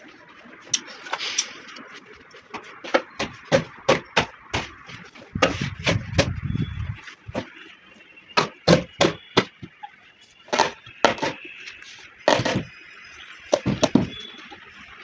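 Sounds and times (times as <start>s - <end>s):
sharp knocks: 2.9s - 6.4s, 8.4s - 9.7s, 12.3s - 12.7s, 13.5s - 14.2s.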